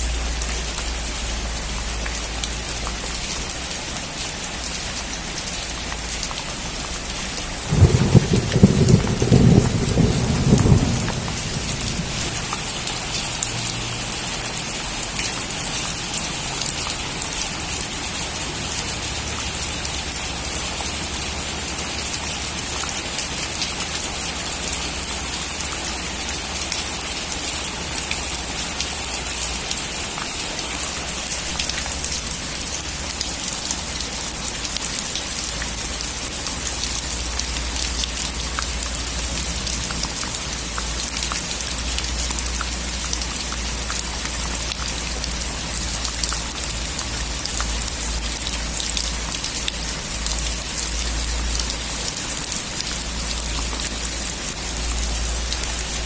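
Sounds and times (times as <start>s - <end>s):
heavy rain on a metal roof: 0.0s - 56.0s
low thunder rumble: 7.6s - 12.6s.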